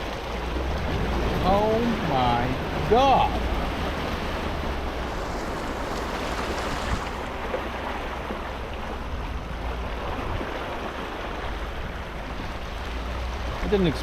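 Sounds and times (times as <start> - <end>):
steady low rumble: 0.0 - 13.6
floodwater rushing and splashing: 0.0 - 14.0.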